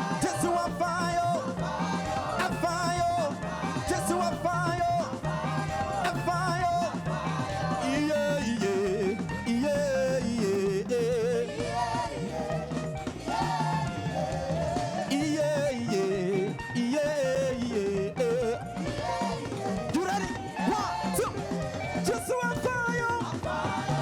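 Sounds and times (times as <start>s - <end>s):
gospel band playing: 0.0s - 24.0s
person singing: 0.0s - 24.0s.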